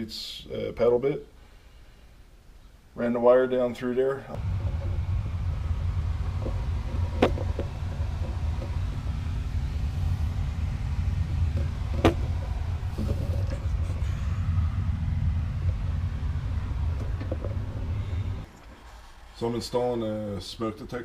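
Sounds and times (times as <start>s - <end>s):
low rumble: 4.3s - 19.7s.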